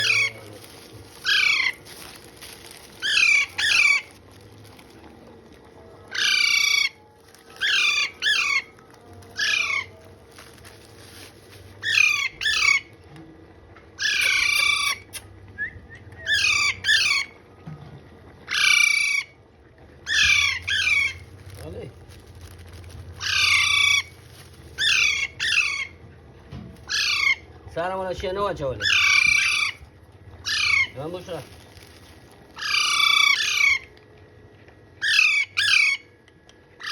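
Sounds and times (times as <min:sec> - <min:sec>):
parrot calling: 0:00.0 - 0:04.9, 0:06.1 - 0:12.9, 0:14.0 - 0:15.2, 0:16.2 - 0:17.4, 0:18.5 - 0:19.4, 0:20.0 - 0:26.1, 0:26.8 - 0:27.6, 0:28.8 - 0:34.0, 0:35.0 - 0:36.2.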